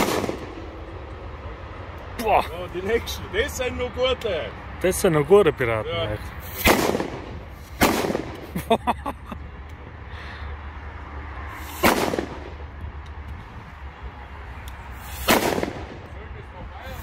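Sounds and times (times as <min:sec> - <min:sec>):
firecracker bangs: 0:00.0 - 0:00.7, 0:06.5 - 0:08.5, 0:11.6 - 0:12.6, 0:15.1 - 0:16.1
firecracker crackles: 0:06.4 - 0:08.6, 0:11.6 - 0:12.6, 0:15.0 - 0:16.1.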